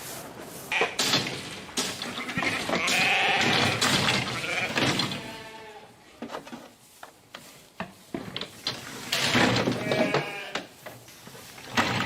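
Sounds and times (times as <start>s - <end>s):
sheep bleating: 2.2s - 3.6s, 4.3s - 5.9s, 9.8s - 10.6s.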